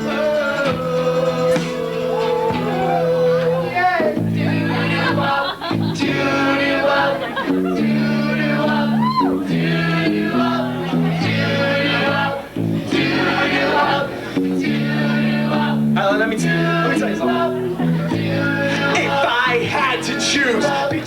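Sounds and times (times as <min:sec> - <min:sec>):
bass line: 0:00.0 - 0:21.0
guitar chords: 0:00.0 - 0:21.0
people singing: 0:00.0 - 0:21.0.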